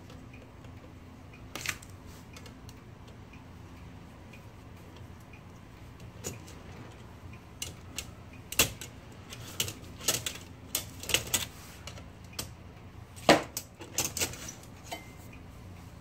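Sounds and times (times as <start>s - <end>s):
typewriter parts clicking: 7.6s - 12.5s, 13.5s - 14.6s.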